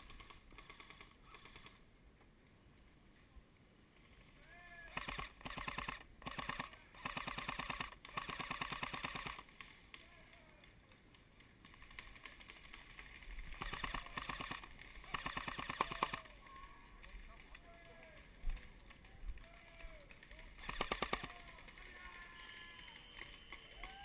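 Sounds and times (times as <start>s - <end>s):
airsoft gun firing bursts: 0.0s - 1.8s, 4.9s - 9.5s, 11.8s - 16.3s, 20.0s - 21.9s.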